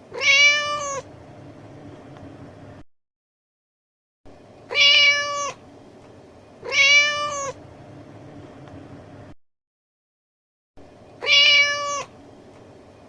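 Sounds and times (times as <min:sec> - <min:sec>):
cat meowing: 0:00.1 - 0:01.1, 0:04.7 - 0:05.6, 0:06.6 - 0:07.6, 0:11.2 - 0:12.2.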